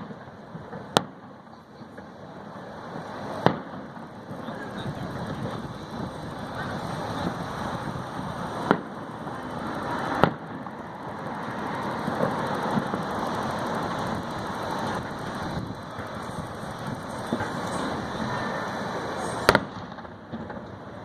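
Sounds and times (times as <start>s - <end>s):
faint firework pops: 0.0s - 2.2s, 3.0s - 5.6s, 8.6s - 9.0s, 10.1s - 10.7s, 12.1s - 13.1s, 19.4s - 20.8s
fireworks bangs: 0.0s - 21.0s
steady background noise: 0.0s - 21.0s.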